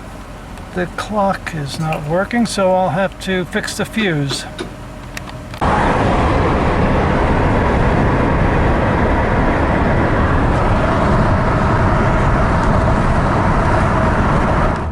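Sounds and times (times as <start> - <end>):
car engine and road noise: 0.0 - 14.9.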